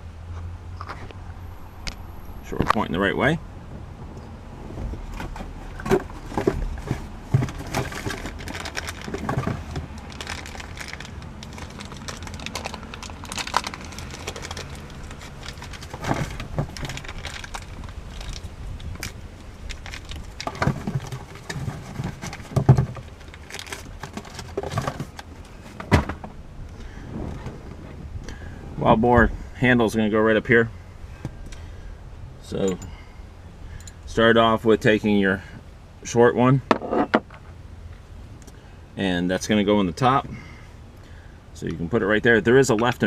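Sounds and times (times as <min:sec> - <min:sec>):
handling knocks and clicks: 0:04.0 - 0:26.4
crinkling: 0:04.9 - 0:28.5.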